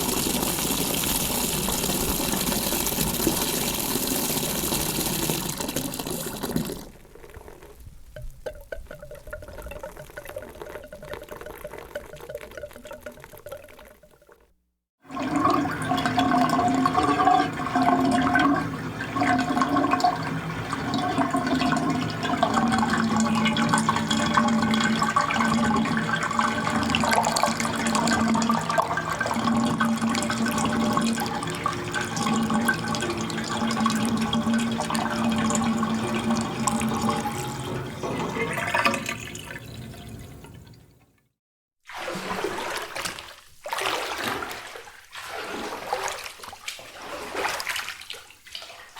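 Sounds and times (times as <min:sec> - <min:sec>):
rushing splashing water: 0:41.9 - 0:48.9.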